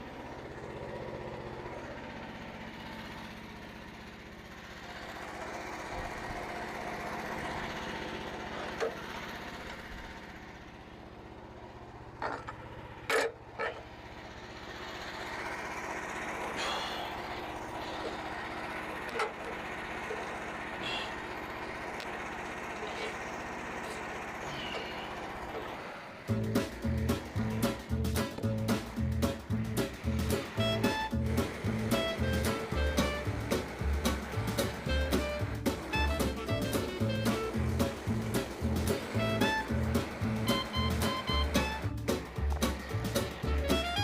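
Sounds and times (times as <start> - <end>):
sawmill engine running: 0.0 - 44.0
band blade sawing log: 14.7 - 44.0.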